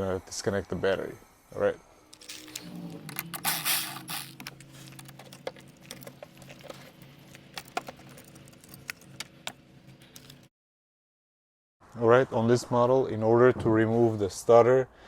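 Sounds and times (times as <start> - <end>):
steady low hum: 1.0 - 10.5
tools and metal parts clattering: 2.2 - 10.5.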